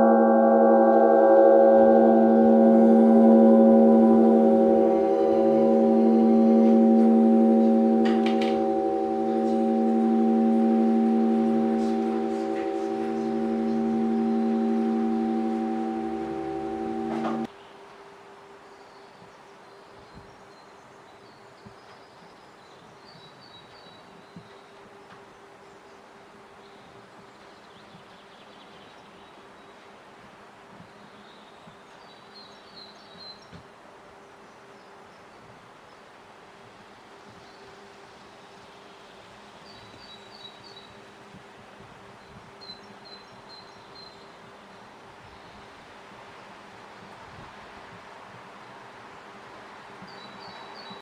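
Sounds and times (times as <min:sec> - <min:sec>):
church bells ringing: 0:00.0 - 0:17.5
faint high chirps: 0:00.0 - 0:17.5
faint steady hum: 0:00.0 - 0:17.5.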